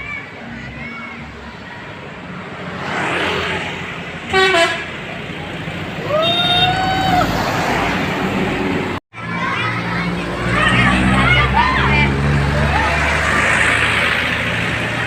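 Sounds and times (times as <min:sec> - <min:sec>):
steady vehicle noise: 0:00.0 - 0:15.0
musical bus horn: 0:04.3 - 0:05.0.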